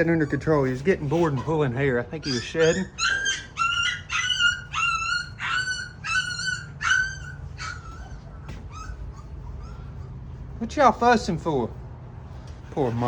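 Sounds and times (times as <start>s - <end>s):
puppies whimpering: 0.0s - 11.2s.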